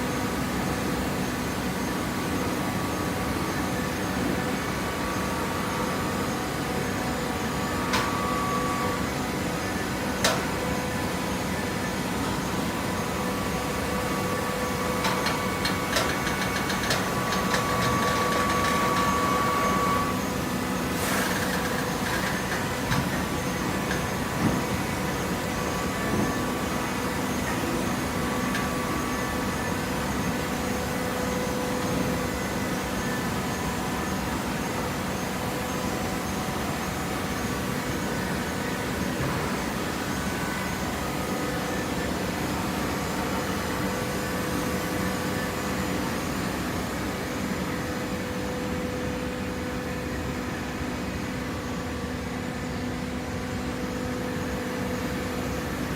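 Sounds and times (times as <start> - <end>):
baler motor and pump hum: 0.0 - 55.9.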